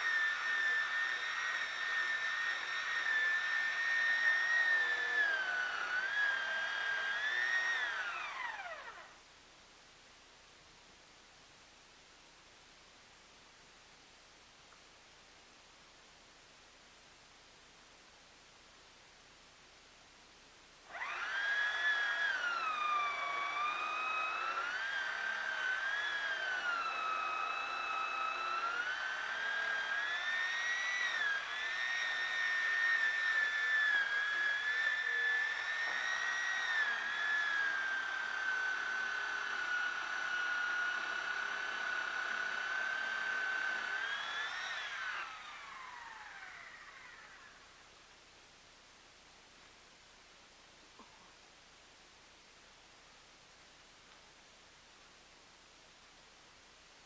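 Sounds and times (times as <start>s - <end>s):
chainsaw cutting a log: 0.0s - 9.1s, 20.9s - 47.5s.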